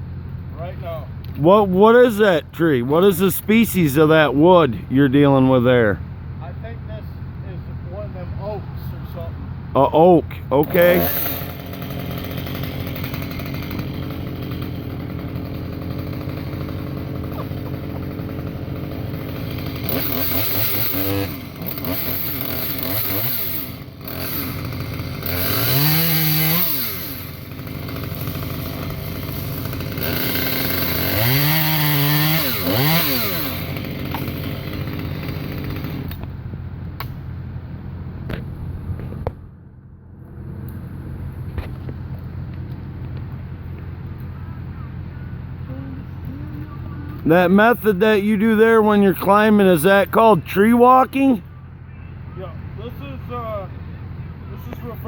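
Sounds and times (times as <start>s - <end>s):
chainsaw revving and cutting wood: 1.3s - 6.1s, 10.4s - 36.4s, 47.1s - 51.5s.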